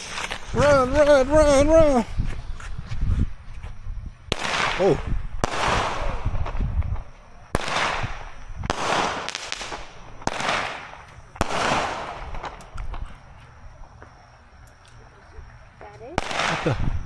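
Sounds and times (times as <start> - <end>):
firework bangs: 0.0 - 3.7, 4.3 - 13.2, 16.1 - 17.0
firework hiss: 0.0 - 13.4, 16.1 - 17.0.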